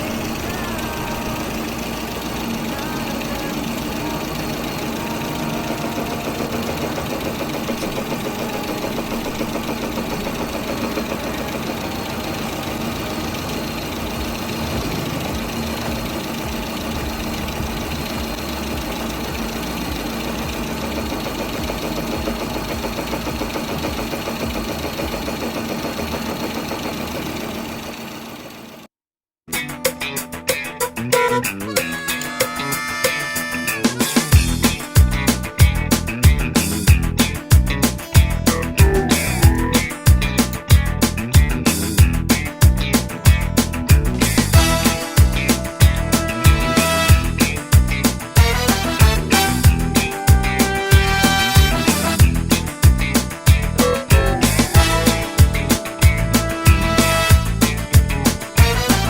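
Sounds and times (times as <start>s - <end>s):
car engine idling with a knock: 13.1s - 27.3s.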